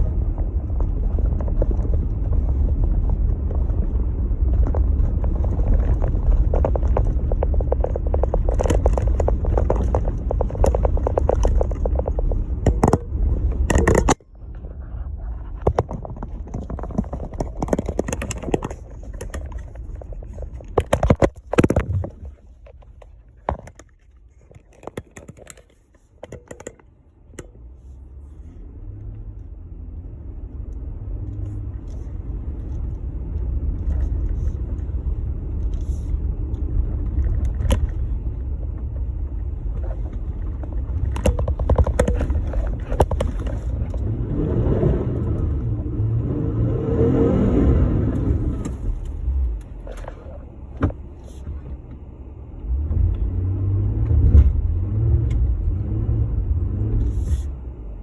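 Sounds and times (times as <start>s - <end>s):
sharp knocks and clatters: 0.0s - 14.6s, 15.3s - 27.5s, 37.1s - 45.7s
pickup truck engine rumble: 0.0s - 24.8s, 26.4s - 58.0s.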